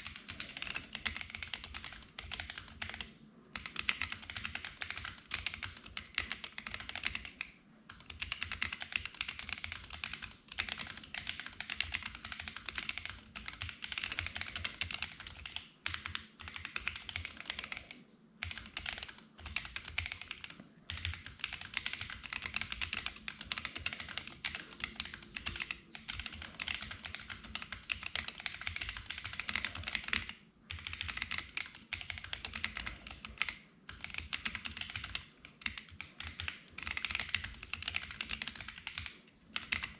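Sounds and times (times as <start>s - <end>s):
typing on mechanical keyboard: 0.0s - 39.9s.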